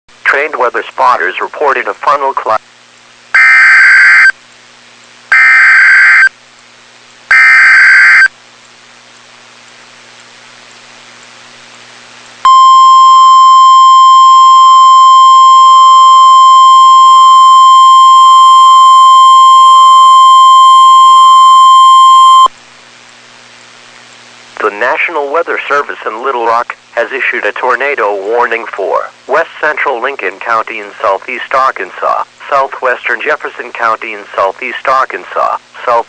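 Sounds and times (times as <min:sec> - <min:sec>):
digital data bursts: 0:03.4 - 0:04.3, 0:05.3 - 0:06.3, 0:07.3 - 0:08.3, 0:12.5 - 0:22.5.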